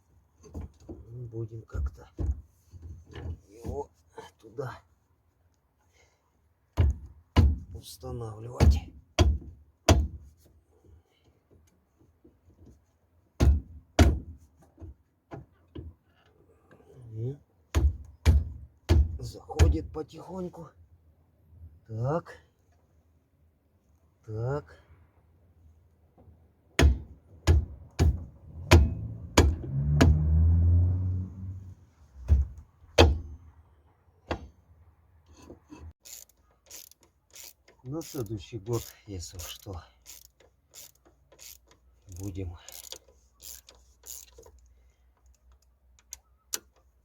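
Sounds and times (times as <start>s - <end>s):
hammer knocks on brake drum: 26.8s - 30.2s.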